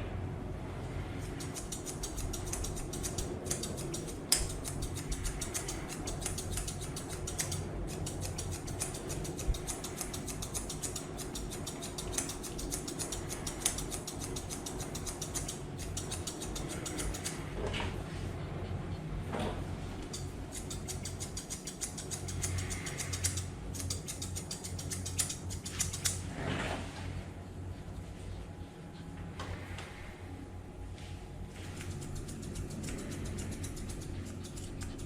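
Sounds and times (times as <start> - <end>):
scissors snipping fur: 1.2 - 17.6, 19.8 - 26.3, 31.5 - 35.0.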